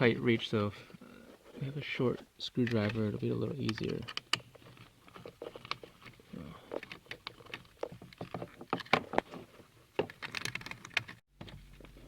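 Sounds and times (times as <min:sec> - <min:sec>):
screwdriver clicking and scraping plastic: 0:02.6 - 0:09.3, 0:10.0 - 0:11.2.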